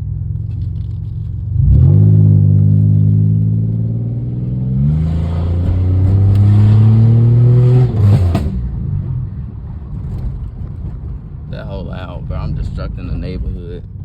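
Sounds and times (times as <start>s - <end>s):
car engine accelerating hard: 1.6s - 8.7s.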